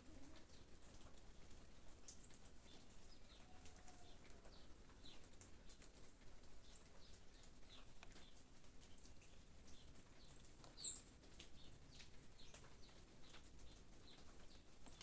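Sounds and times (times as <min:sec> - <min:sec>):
light rain pattering: 0:00.0 - 0:15.0
small birds chirping: 0:06.5 - 0:15.0.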